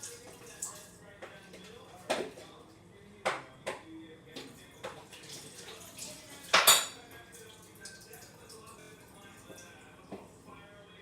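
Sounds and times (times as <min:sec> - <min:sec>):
dishes and utensils clinking: 0:04.4 - 0:07.5.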